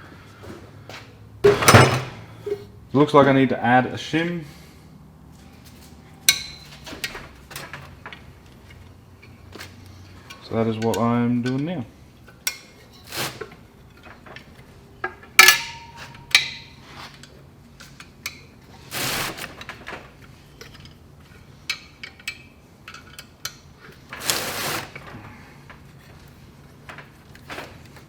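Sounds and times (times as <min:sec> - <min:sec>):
metal scraping: 0:01.4 - 0:02.8.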